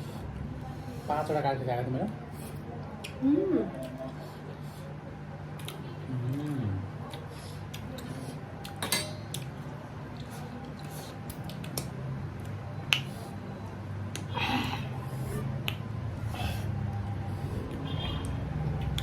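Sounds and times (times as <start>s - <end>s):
chewing: 5.5s - 13.4s
utensils clinking on plates: 8.8s - 9.5s.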